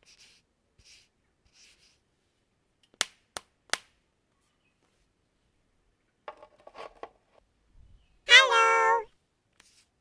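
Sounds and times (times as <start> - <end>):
soft rustle: 9.5 - 10.0.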